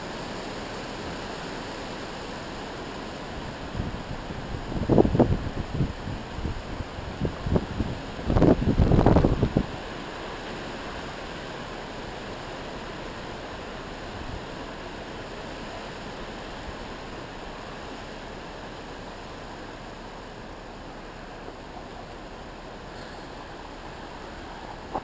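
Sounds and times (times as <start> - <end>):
storm wind roaring: 2.5 - 10.2.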